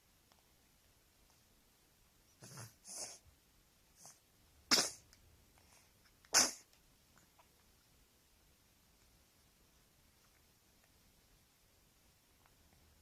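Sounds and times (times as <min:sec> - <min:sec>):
baby sneezing: 0:04.7 - 0:05.1, 0:06.3 - 0:06.7.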